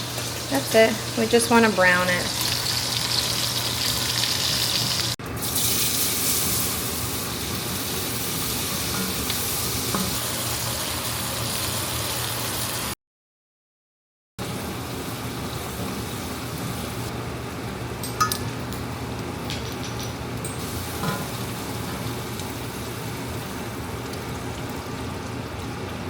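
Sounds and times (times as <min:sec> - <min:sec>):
meat sizzling in a pan: 0:02.2 - 0:12.9.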